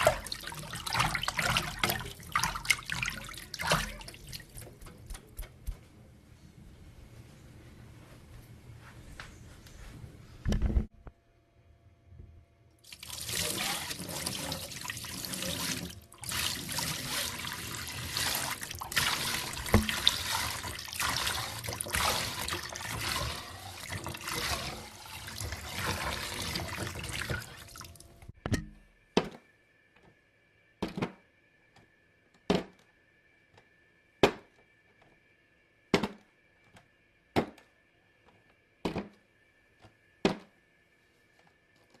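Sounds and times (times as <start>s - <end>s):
water running: 0.0s - 5.8s, 12.8s - 28.3s.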